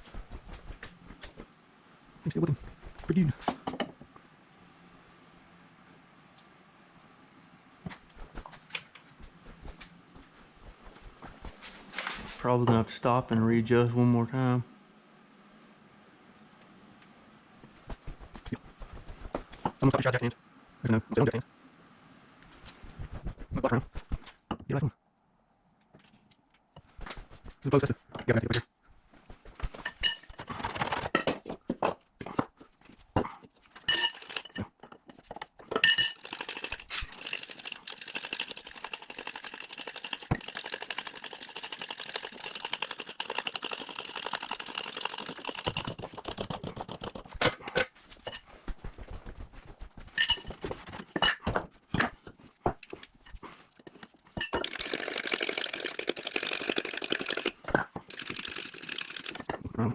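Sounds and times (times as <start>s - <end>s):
metal knocks and clinks: 33.9s - 36.4s, 50.2s - 51.4s.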